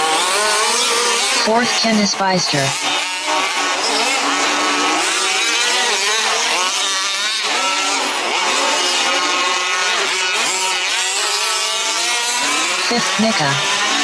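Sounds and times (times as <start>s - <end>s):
small two-stroke engines revving: 0.0s - 14.0s.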